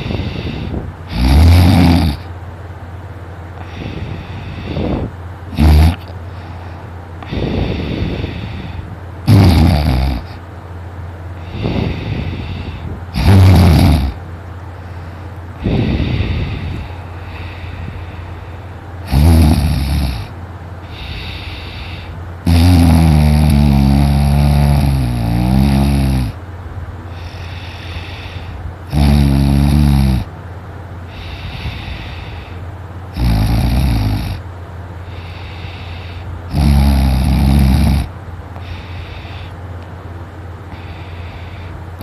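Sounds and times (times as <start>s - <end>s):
quiet breathing: 0.0s - 1.2s, 3.2s - 9.2s, 11.2s - 13.2s, 14.1s - 19.1s, 20.2s - 22.5s, 26.3s - 29.0s, 30.2s - 33.2s, 34.3s - 36.6s, 38.0s - 42.0s
man snoring loudly: 0.0s - 2.3s, 3.6s - 6.1s, 7.2s - 10.4s, 11.4s - 14.2s, 19.0s - 26.4s, 27.1s - 30.3s, 31.1s - 34.4s, 35.1s - 39.5s.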